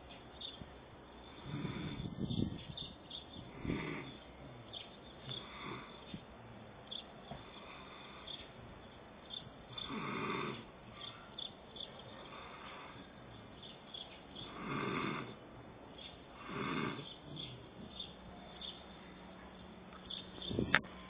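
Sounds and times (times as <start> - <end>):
soft breath: 1.2 - 2.4, 3.4 - 8.8, 12.0 - 13.7
person snoring: 1.3 - 2.2, 3.4 - 4.7, 5.3 - 6.1, 9.8 - 10.7, 14.4 - 15.4, 16.4 - 17.6.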